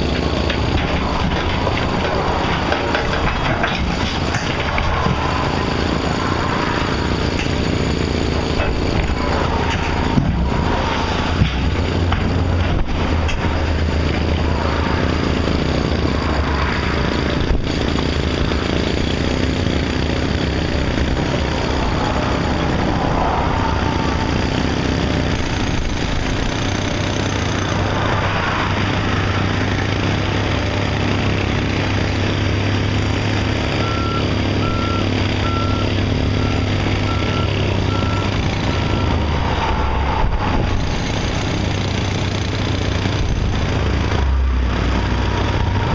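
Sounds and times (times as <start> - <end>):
heavy construction machinery running: 0.0 - 45.9
reversing alarm beeping: 33.7 - 39.4.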